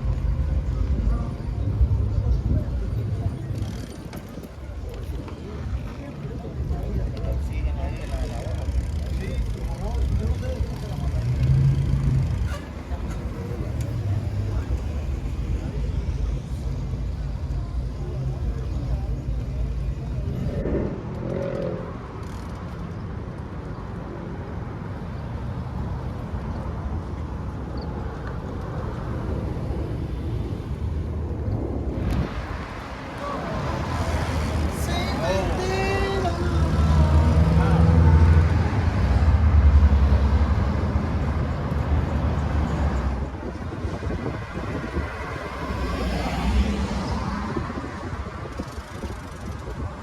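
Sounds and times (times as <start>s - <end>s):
quiet street background: 0.0s - 50.0s
road traffic rumble: 0.0s - 50.0s.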